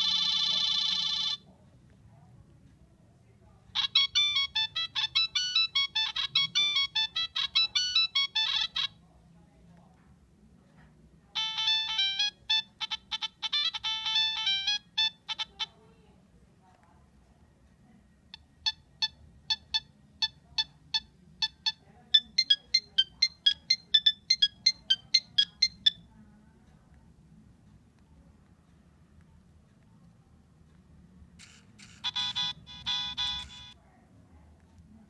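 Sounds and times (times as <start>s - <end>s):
electronic beeping ringtone: 0.0s - 1.4s, 3.8s - 9.0s, 11.4s - 15.8s, 18.3s - 26.1s, 31.4s - 33.8s
ringtone tune of short beeps: 3.8s - 9.0s, 11.4s - 15.8s, 18.3s - 26.0s, 31.8s - 33.8s.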